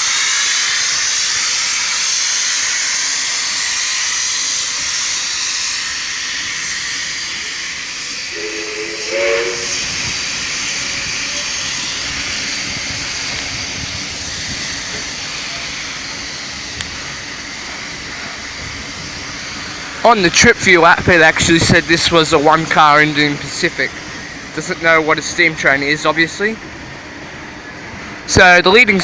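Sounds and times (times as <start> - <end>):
steam locomotive hissing: 0.0 - 29.0
steam whistle blast: 8.2 - 10.0.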